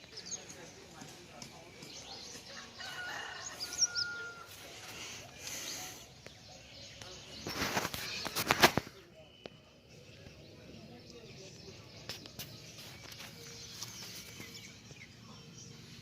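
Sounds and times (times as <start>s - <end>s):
birds chirping: 0.0s - 16.0s.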